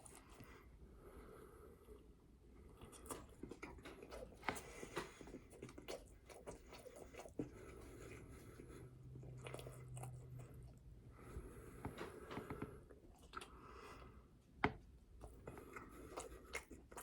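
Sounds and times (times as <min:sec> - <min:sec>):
low steady hum: 0:00.0 - 0:17.0
person biting and chewing: 0:02.8 - 0:07.8.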